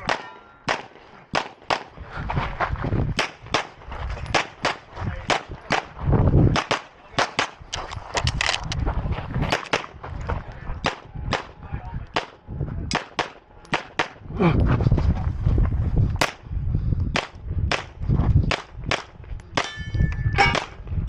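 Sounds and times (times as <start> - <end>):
pistol shots: 0.0 - 2.0, 3.2 - 7.6, 9.5 - 10.0, 10.8 - 14.2, 16.2 - 16.4.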